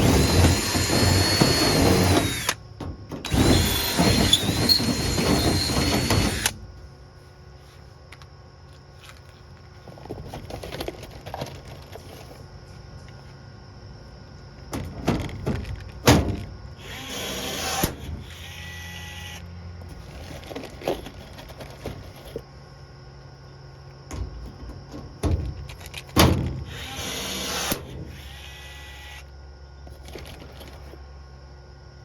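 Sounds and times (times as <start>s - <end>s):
electric power tool whirring: 0.0s - 2.6s, 3.2s - 6.6s, 16.8s - 19.5s, 26.7s - 29.3s
sheet metal knocks and clatter: 24.1s - 26.6s.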